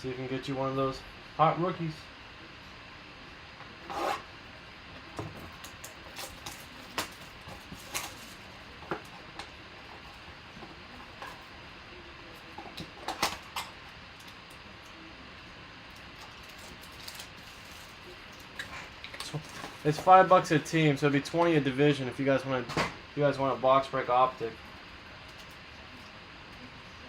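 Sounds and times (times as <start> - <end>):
cardboard and packaging rustling: 5.3 - 9.3, 16.2 - 18.0.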